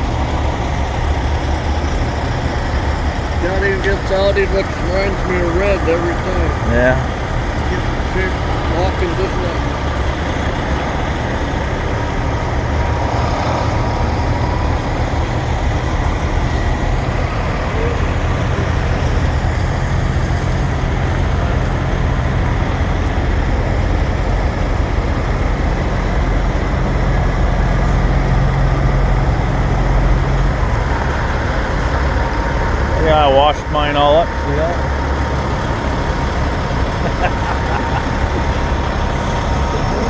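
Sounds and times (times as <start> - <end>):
diesel truck engines rumbling: 0.0 - 40.0.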